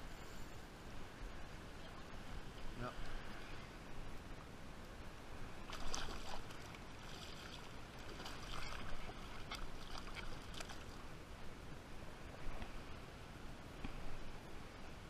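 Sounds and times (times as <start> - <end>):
wind: 0.0 - 15.0
shallow water splashing: 5.6 - 11.1.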